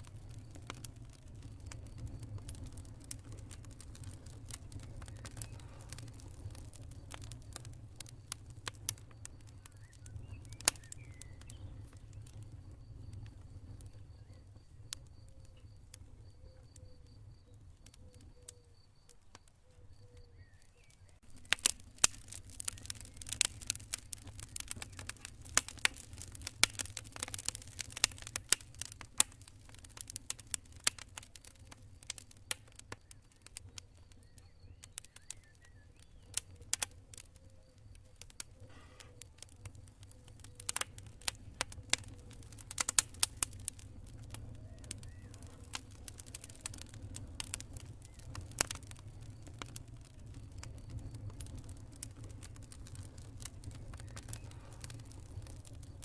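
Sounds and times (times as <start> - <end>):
campfire crackling: 0.0 - 56.0
cricket chirping: 8.1 - 21.5, 31.0 - 42.7.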